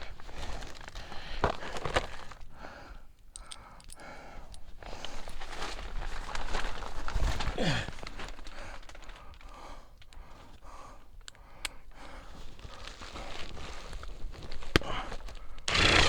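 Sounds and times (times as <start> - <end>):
heavy breathing: 14.8 - 16.0.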